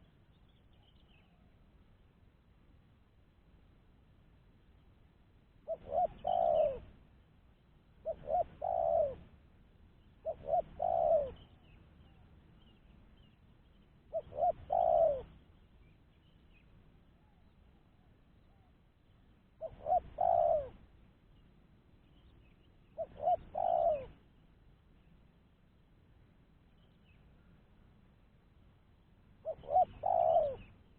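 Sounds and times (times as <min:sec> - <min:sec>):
dove cooing: 0:05.6 - 0:07.0, 0:08.0 - 0:09.3, 0:10.2 - 0:11.8, 0:14.1 - 0:15.4, 0:19.6 - 0:20.9, 0:22.9 - 0:24.2, 0:29.4 - 0:30.8.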